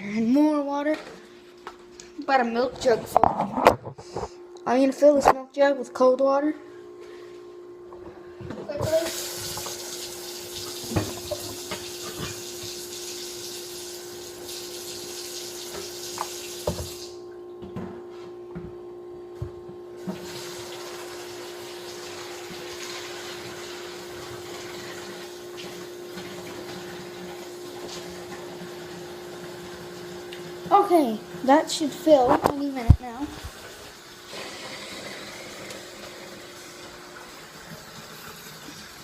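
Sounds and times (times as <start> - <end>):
steady low hum: 0.0 - 9.1
tap water filling a plastic jug: 8.8 - 13.3, 14.6 - 17.0, 20.0 - 30.5.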